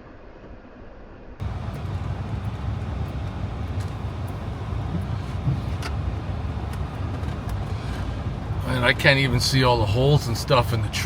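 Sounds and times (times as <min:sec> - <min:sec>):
faint clicks and knocks: 0:01.4 - 0:08.6
vehicle engine and tyres rumbling: 0:01.4 - 0:11.0.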